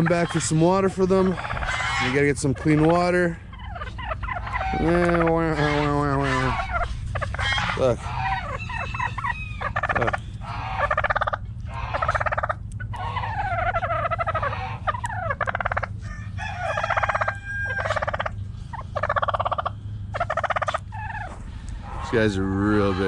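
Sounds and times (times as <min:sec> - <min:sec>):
turkeys gobbling: 0:00.0 - 0:23.0.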